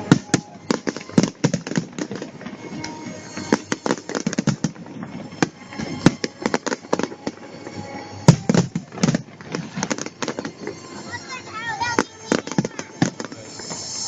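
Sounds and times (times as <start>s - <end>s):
fireworks bangs: 0.0s - 14.0s
fireworks crackling: 0.0s - 14.0s.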